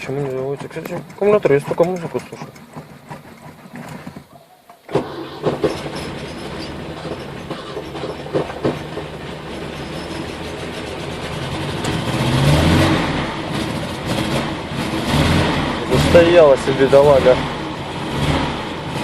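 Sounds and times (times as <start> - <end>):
car engine starting and revving: 4.9 - 19.0.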